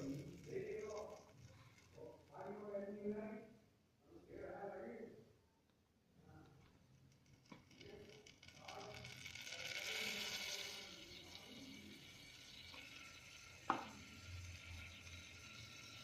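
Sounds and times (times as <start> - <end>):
semolina sizzling: 0.0 - 3.1, 7.0 - 16.0
spoon tapping kettle: 11.2 - 16.0.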